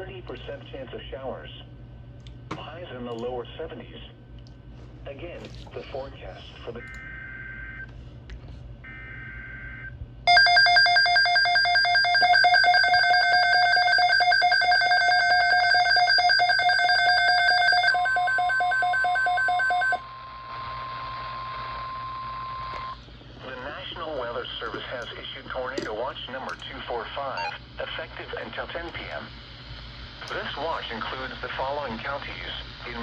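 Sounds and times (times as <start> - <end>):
rapidly pulsing alarm tones: 8.9 - 23.0, 27.4 - 27.6
steady weather radio alarm tone: 8.9 - 25.7, 26.9 - 29.3
static hiss: 22.7 - 33.0
screechy data tones: 27.4 - 27.6.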